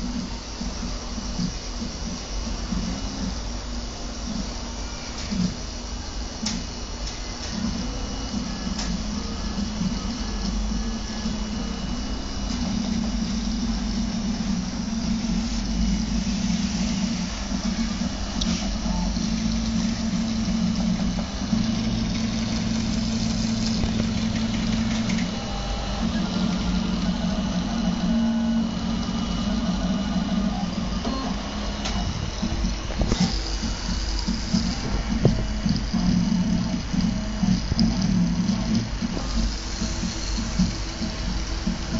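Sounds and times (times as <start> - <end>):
printer stepper motors humming: 0.0 - 41.9.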